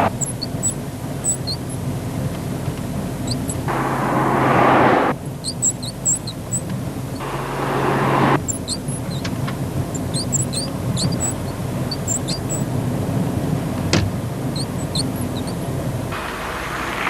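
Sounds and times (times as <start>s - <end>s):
short high-pitched squeaks: 0.0s - 1.8s, 3.2s - 9.3s, 9.9s - 12.7s, 14.6s - 15.6s
car engine hum: 0.0s - 17.0s
rushing surges: 3.7s - 5.2s, 7.2s - 8.4s, 16.1s - 17.0s.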